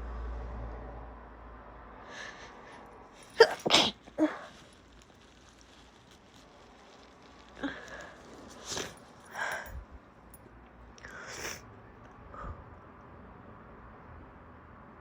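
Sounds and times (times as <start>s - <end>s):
woman sniffling and snorting: 2.1s - 5.4s, 7.4s - 9.8s, 11.0s - 11.7s.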